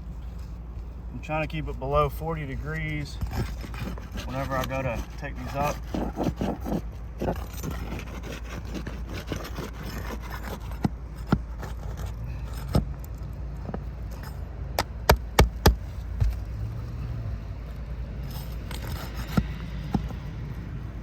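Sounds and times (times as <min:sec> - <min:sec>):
metal tool scraping shingles: 0:02.6 - 0:13.2, 0:17.7 - 0:20.2.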